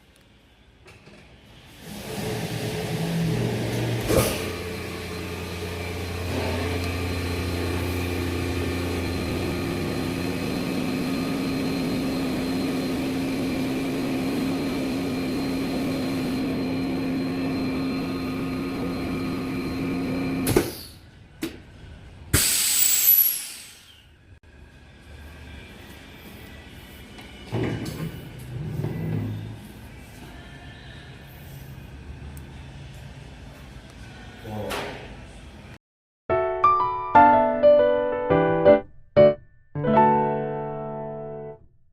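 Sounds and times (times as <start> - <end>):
vacuum pump humming: 3.5 - 20.5
air hissing into chamber: 22.4 - 24.1.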